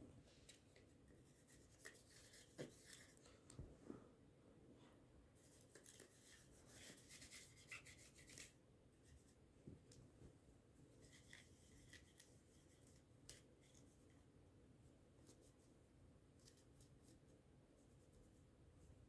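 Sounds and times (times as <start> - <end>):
scratchy scrubbing on a smartphone: 5.4 - 8.6.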